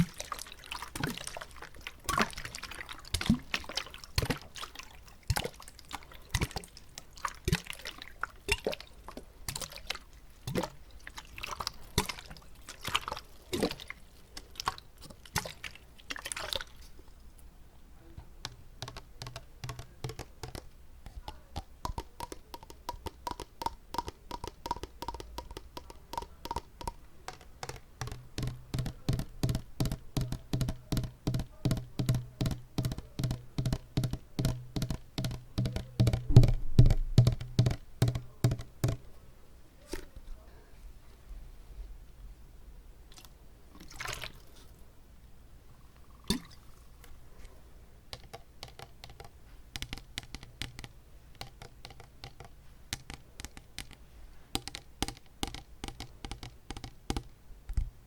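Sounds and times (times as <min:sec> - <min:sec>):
tapping on water bottle: 0:00.0 - 0:05.6, 0:18.2 - 0:39.1, 0:48.1 - 0:57.9.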